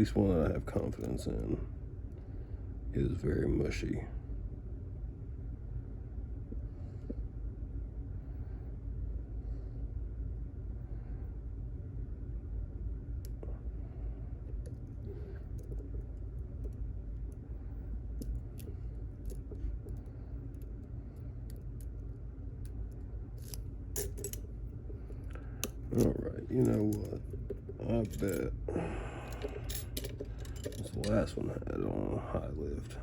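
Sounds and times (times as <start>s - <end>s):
steady low hum: 0.0s - 33.0s
lock pick scraping and clicking: 23.4s - 24.4s, 29.3s - 31.2s.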